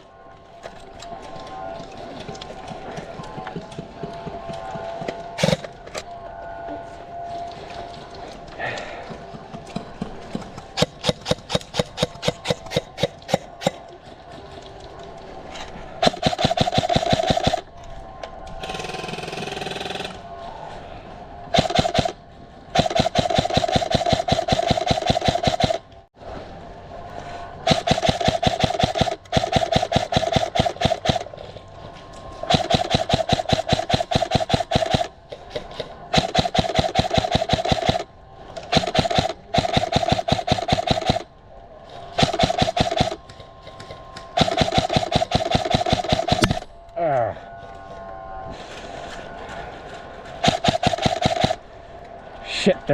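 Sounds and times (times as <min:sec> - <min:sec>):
electric motor whine: 0:00.0 - 0:08.5, 0:41.0 - 0:50.0.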